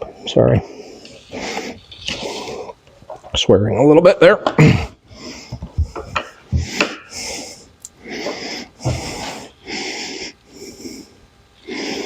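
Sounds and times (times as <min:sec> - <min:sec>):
person breathing hard: 0:00.6 - 0:02.8, 0:04.6 - 0:12.0.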